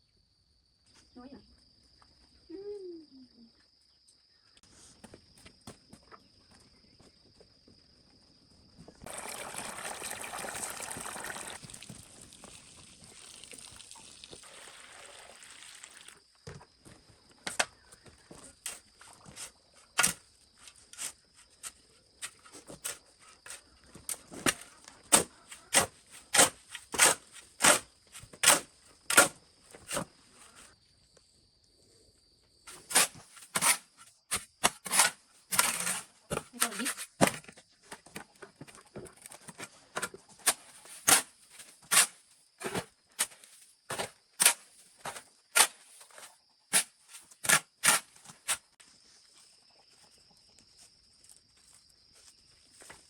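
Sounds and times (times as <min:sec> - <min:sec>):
water pouring and splashing: 0:09.0 - 0:16.2.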